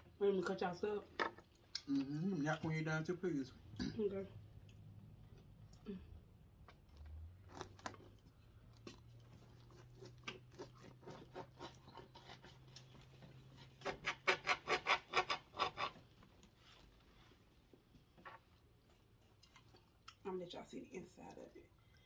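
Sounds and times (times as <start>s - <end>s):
knife sawing through sandwich: 9.7s - 12.8s.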